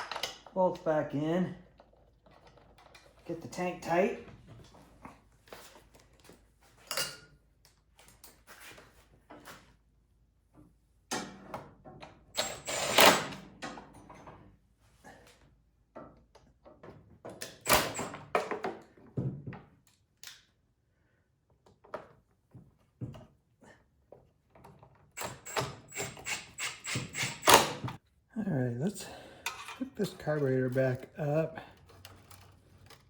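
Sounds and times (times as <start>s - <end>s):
hand tools and bolts clinking: 29.4s - 32.9s.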